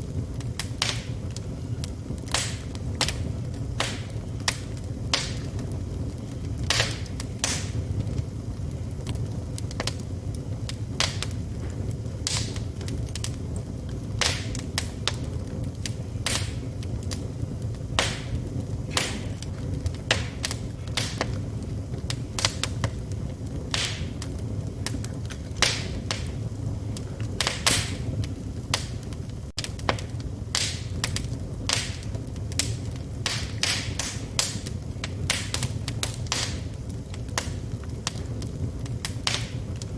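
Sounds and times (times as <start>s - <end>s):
logs crackling and popping: 0.0s - 39.9s
low rumble of fire: 0.0s - 39.9s.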